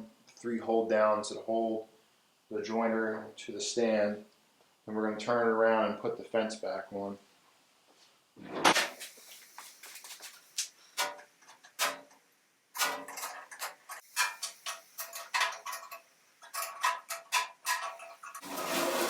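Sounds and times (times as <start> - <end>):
metal tools and bolts clinking: 12.8 - 18.4.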